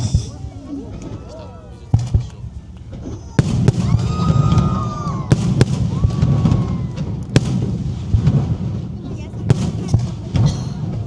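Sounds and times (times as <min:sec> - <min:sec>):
fireworks sharp bangs: 0:00.0 - 0:01.3, 0:01.9 - 0:11.0
fireworks rumble: 0:00.0 - 0:11.0
whistling shells: 0:03.4 - 0:07.6.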